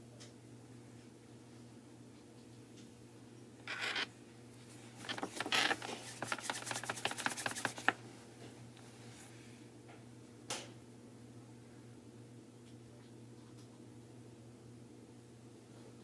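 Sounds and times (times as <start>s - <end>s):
fast run of small clicks: 5.0s - 8.0s
rubbing: 5.0s - 8.0s
hands scraping small object: 5.1s - 7.9s.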